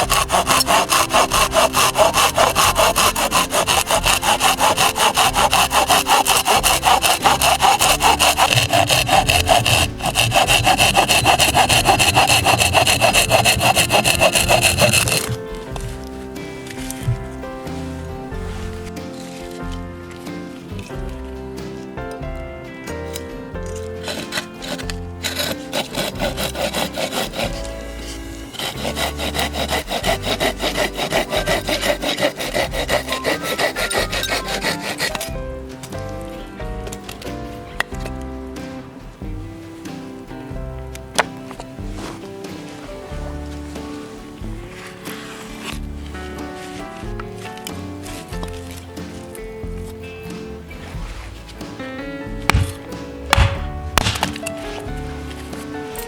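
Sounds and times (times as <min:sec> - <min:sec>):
hand saw cutting wood: 0:00.0 - 0:18.9, 0:23.9 - 0:35.9, 0:44.7 - 0:46.8, 0:52.5 - 0:55.7
background music: 0:00.0 - 0:56.0.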